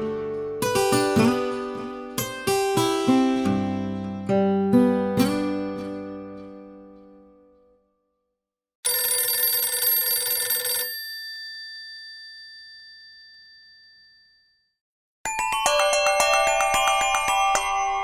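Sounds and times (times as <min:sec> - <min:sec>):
telephone bell ringtone: 0:08.9 - 0:14.6, 0:15.3 - 0:18.0.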